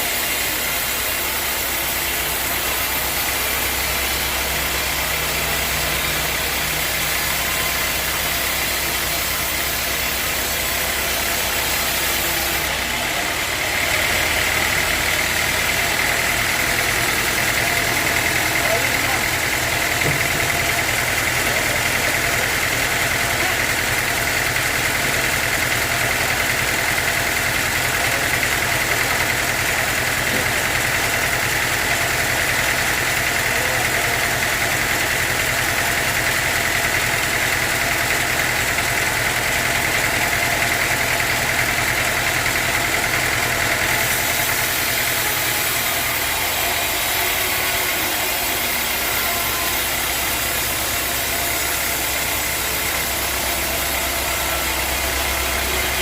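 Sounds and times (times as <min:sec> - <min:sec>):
low engine drone: 0:41.6 - 0:56.0.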